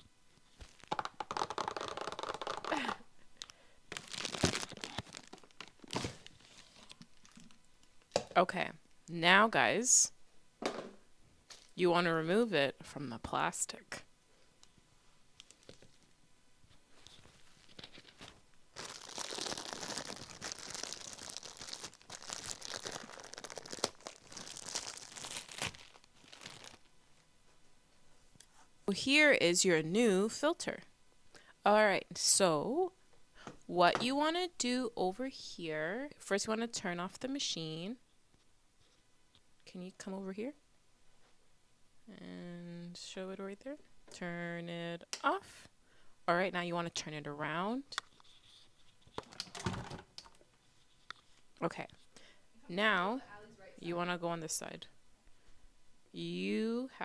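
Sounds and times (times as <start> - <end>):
packaging crinkling and rustling: 0.5 - 7.6, 15.4 - 16.1, 16.8 - 26.9.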